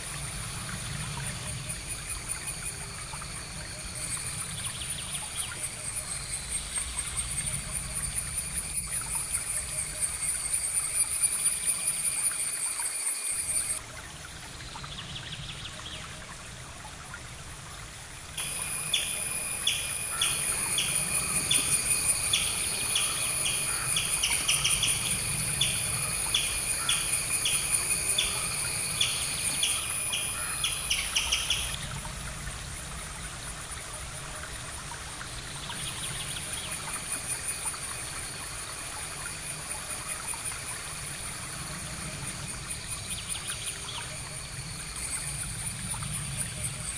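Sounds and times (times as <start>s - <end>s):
faint water trickle: 0.0s - 46.9s
chirping chorus: 18.4s - 31.6s.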